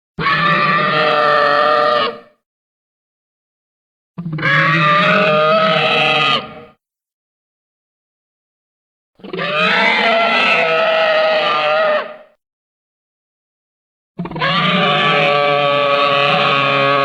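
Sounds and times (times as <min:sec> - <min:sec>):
dinosaur roar: 0:14.2 - 0:17.0.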